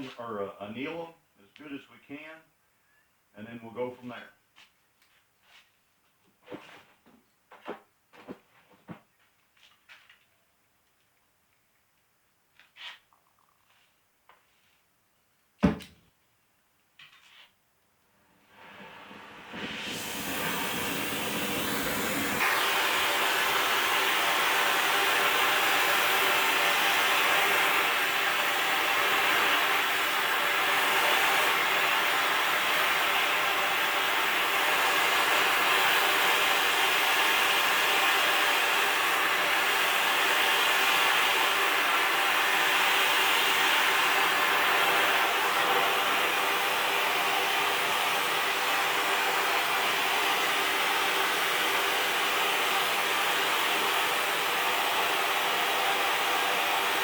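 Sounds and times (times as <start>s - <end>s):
gas torch flame hissing: 18.3s - 57.0s.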